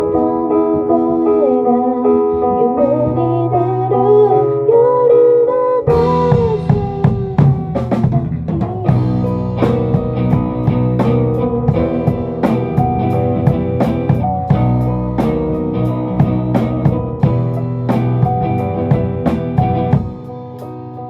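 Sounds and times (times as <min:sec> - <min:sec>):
wavering lead melody: 0:00.0 - 0:21.0
bass note: 0:05.9 - 0:21.0
drum kit: 0:05.9 - 0:21.0.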